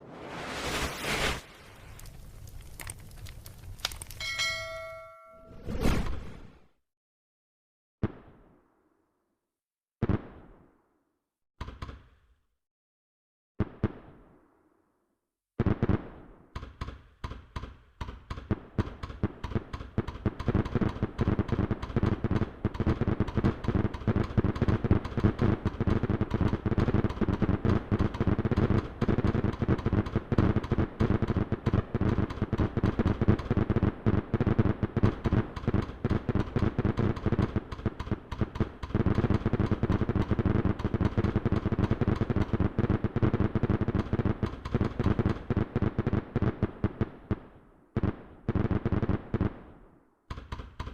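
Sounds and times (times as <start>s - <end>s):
fireworks crackling bangs: 0.0s - 4.3s, 19.2s - 46.4s.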